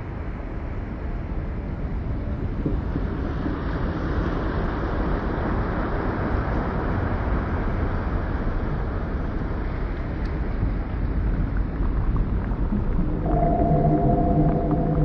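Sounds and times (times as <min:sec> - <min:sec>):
deep underwater water noise: 0:08.2 - 0:15.0.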